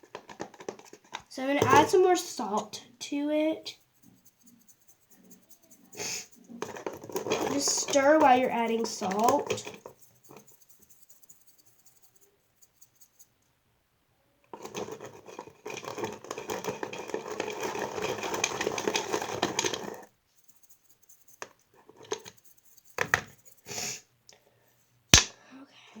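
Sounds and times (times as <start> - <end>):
scratchy stirring of dough in bowl: 0.0 - 13.4, 14.6 - 23.8
scattered taps: 0.1 - 2.7, 6.6 - 13.2.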